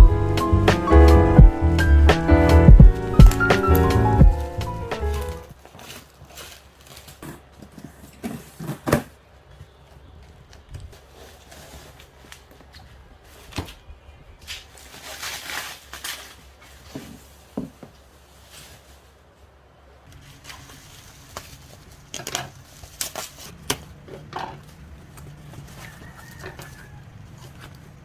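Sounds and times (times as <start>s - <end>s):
packaging rustling: 2.9s - 9.1s, 14.5s - 19.1s.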